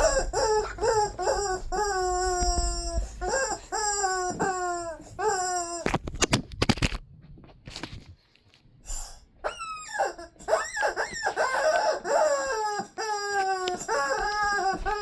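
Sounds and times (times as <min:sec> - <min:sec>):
squeaky dog toy squeaking: 0:00.0 - 0:06.0, 0:09.4 - 0:15.0.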